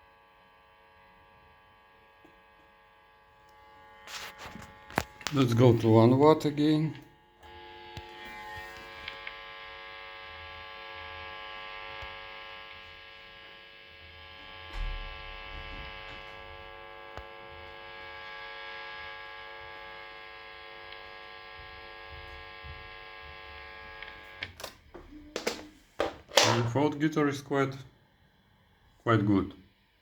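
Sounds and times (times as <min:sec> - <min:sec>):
amplifier mains hum and buzz: 0:00.0 - 0:30.0.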